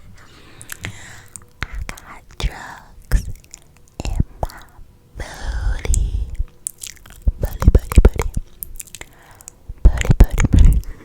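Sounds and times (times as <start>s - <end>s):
wet mouth clicks and smacks: 3.0s - 4.8s, 5.8s - 11.0s.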